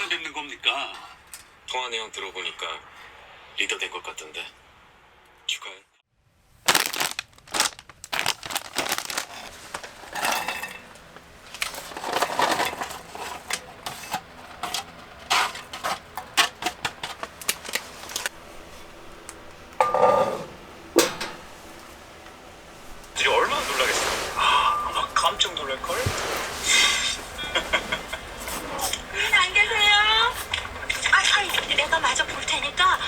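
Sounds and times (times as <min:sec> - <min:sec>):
hard objects clattering: 0:06.7 - 0:18.3, 0:19.8 - 0:21.5.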